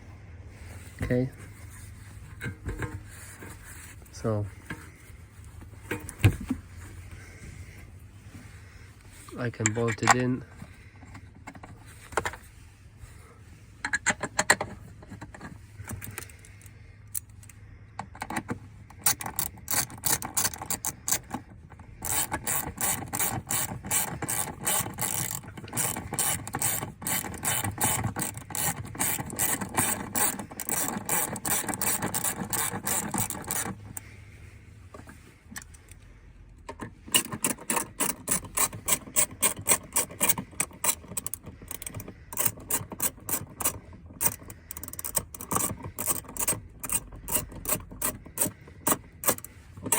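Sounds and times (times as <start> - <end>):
ratchet wrench clicking: 19.0 - 21.4, 22.0 - 33.8, 36.7 - 49.9.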